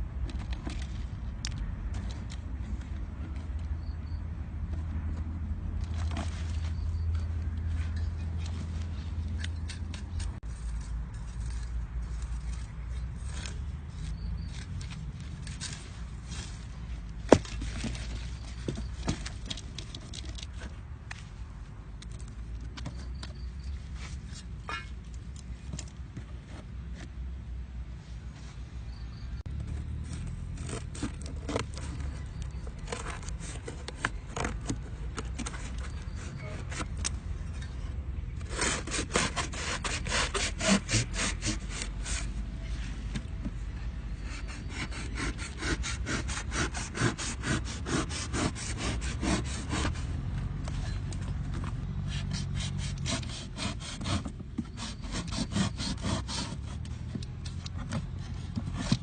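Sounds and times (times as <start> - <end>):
hand saw cutting wood: 38.4 - 42.4, 44.2 - 50.1, 52.0 - 57.1.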